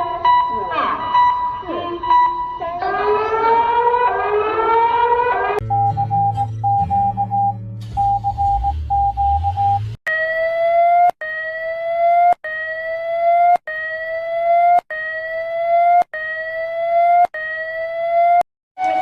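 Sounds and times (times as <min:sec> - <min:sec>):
steady beep: 0:05.6 - 0:11.1.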